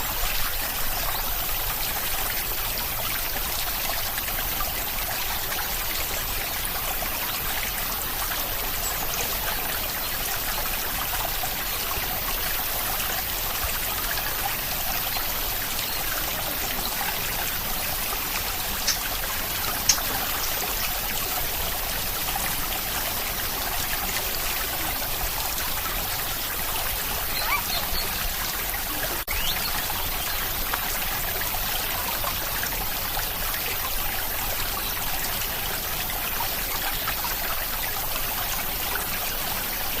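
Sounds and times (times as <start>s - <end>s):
steady rain: 0.0s - 40.0s
water trickling: 0.0s - 40.0s
water drops ticking: 14.6s - 21.5s.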